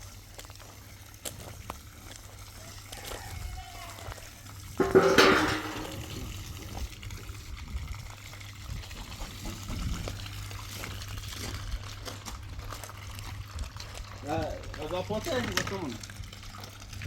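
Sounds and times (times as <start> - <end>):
water trickling: 4.4 - 17.0.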